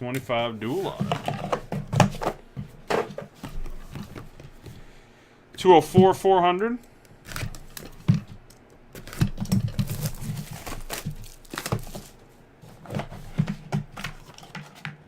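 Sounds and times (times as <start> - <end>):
cards and packaging rustling: 0.4 - 4.8, 7.2 - 15.0.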